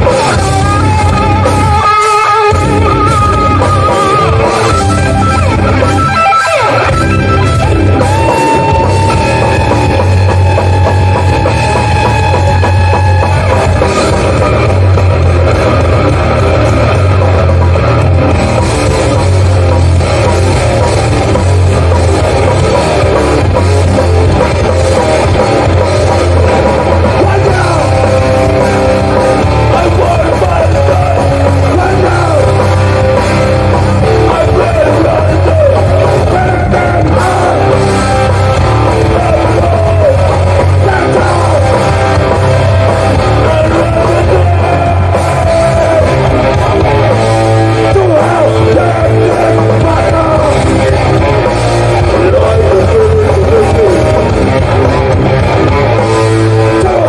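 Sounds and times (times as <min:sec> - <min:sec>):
drum kit: 0:00.0 - 0:57.0
electric guitars: 0:00.0 - 0:57.0
person singing: 0:26.9 - 0:54.9, 0:55.7 - 0:57.0.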